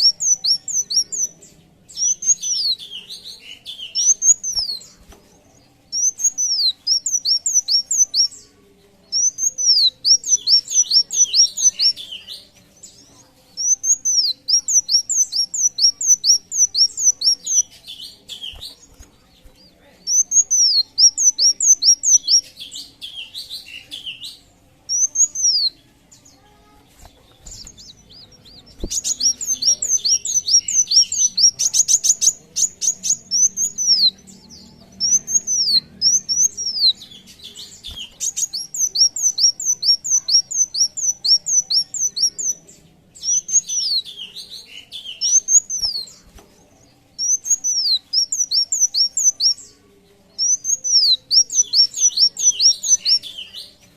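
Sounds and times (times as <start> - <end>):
buzzy bird trill: 0.0 - 5.1, 9.1 - 42.6
sunbird whistled song: 5.9 - 8.4, 13.6 - 18.8, 27.6 - 42.6, 43.2 - 46.1, 47.2 - 49.7.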